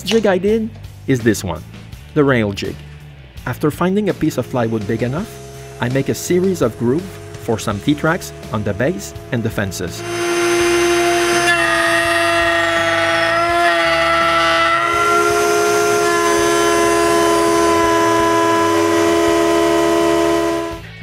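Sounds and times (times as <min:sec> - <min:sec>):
power tool cutting plywood: 0:04.0 - 0:20.9.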